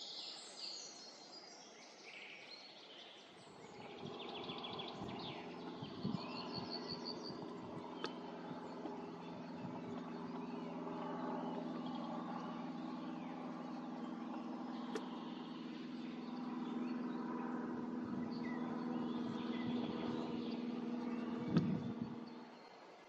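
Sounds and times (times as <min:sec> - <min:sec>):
low mechanical hum: 0:03.3 - 0:23.0.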